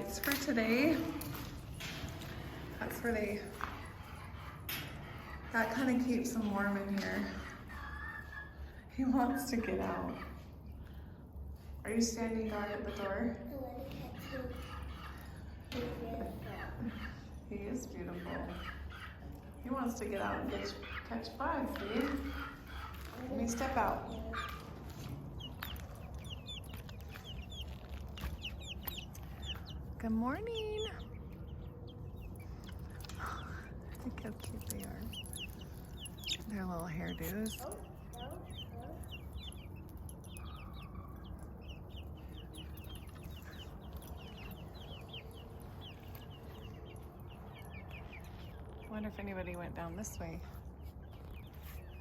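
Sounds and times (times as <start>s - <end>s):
chicks peeping and chirping: 0.0s - 52.0s
low steady rumble: 15.1s - 52.0s.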